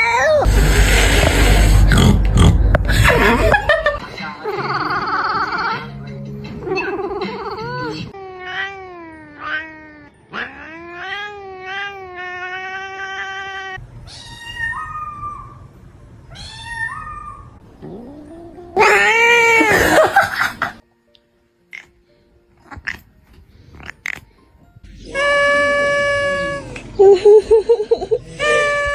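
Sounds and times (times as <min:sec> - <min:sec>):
cat yowling: 0:06.7 - 0:15.6, 0:16.3 - 0:20.1, 0:24.9 - 0:27.0, 0:28.3 - 0:28.9.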